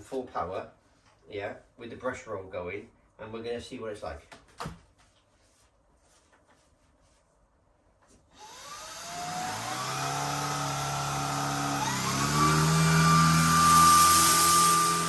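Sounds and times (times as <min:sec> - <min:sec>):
stick vacuum motor whine: 0:08.4 - 0:15.0.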